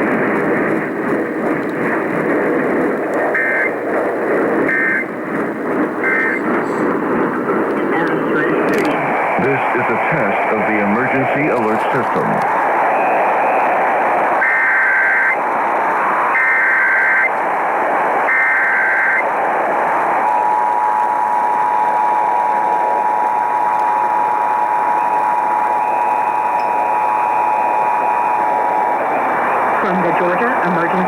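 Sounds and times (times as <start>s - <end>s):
radio hiss: 0.0s - 31.0s
data bursts: 3.3s - 3.8s, 4.6s - 5.1s, 6.0s - 6.9s, 23.7s - 31.0s.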